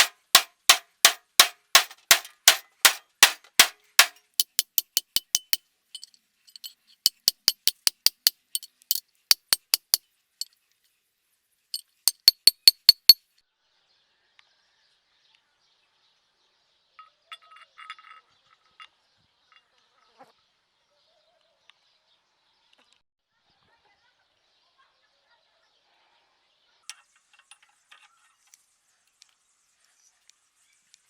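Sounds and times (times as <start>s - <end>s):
hammer clinking on anvil: 0.0s - 10.0s, 12.1s - 13.2s.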